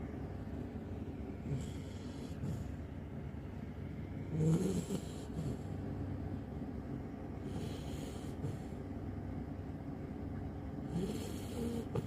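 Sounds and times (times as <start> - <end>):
puppy snoring: 1.4 - 2.9, 4.2 - 6.0, 7.4 - 8.8, 10.8 - 12.0.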